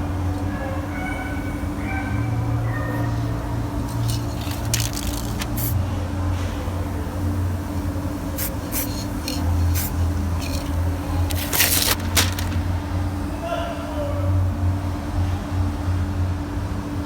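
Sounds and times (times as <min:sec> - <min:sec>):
paint spray gun hissing: 0:03.9 - 0:05.8, 0:08.3 - 0:12.7.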